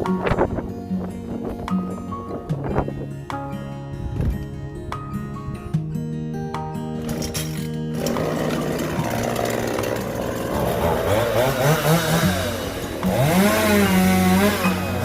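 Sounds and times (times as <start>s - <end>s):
background music: 0.0s - 15.0s
chainsaw cutting wood: 7.0s - 15.0s.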